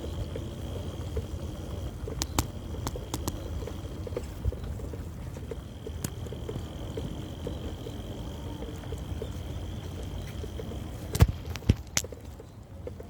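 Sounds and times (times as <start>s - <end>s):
bicycle ticks and rattles: 0.0s - 13.0s
thin high motor whine: 0.0s - 13.0s
wind and road rumble: 0.0s - 13.0s
sharp clicks: 2.1s - 4.8s.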